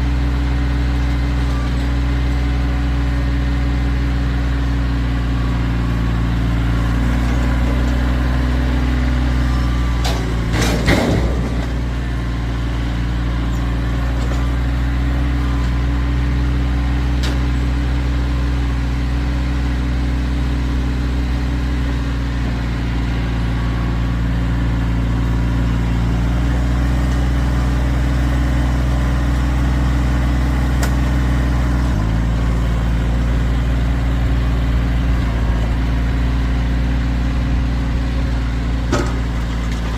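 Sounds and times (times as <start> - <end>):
tractor diesel engine running: 0.0 - 39.9
engine knocks: 6.9 - 15.8, 37.3 - 39.9.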